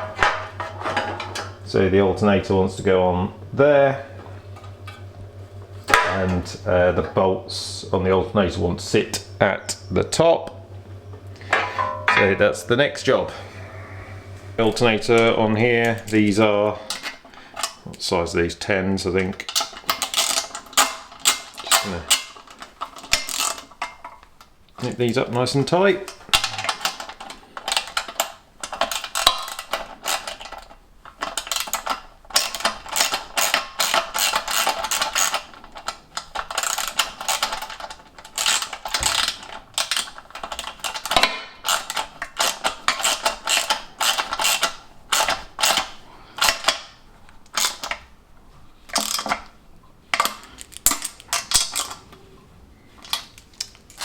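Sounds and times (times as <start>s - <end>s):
ratchet spanner clicking: 23.0s - 23.7s, 31.4s - 46.8s.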